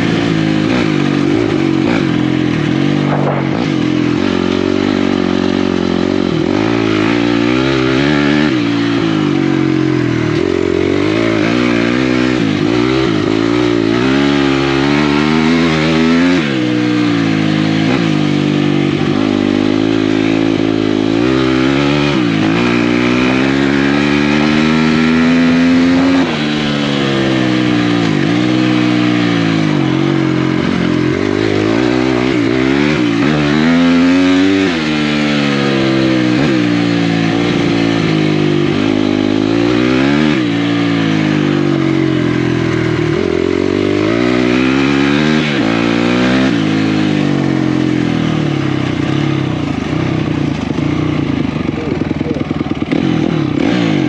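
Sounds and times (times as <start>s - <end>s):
off-road motorcycle engine revving: 0.0s - 54.0s.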